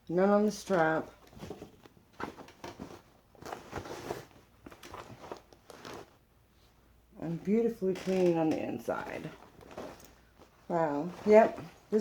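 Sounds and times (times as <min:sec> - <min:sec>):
tote bag rustling and scraping: 0:00.6 - 0:06.2, 0:08.9 - 0:12.0.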